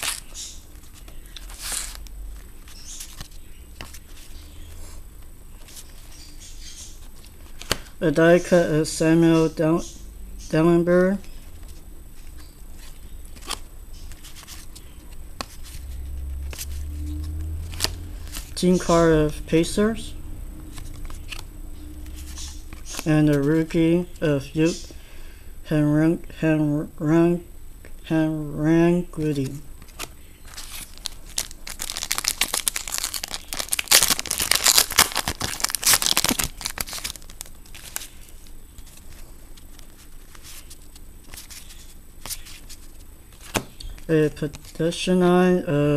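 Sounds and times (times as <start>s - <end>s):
foil wrapper tearing and crinkling: 0.0s - 0.6s, 30.0s - 39.0s
cards sliding against each other: 11.2s - 19.0s, 20.6s - 23.8s
card edges snapping: 29.4s - 38.2s, 43.4s - 44.7s.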